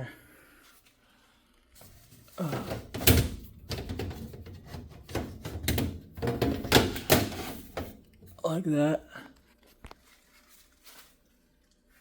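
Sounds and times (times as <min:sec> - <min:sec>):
air filter scraping in slot: 0:03.7 - 0:08.0.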